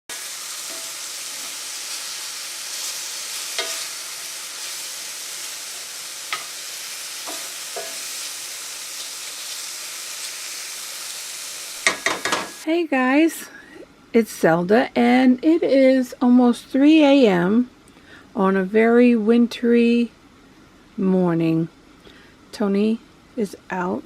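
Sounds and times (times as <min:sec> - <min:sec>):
mushrooms sizzling in a pan: 0:00.1 - 0:12.7.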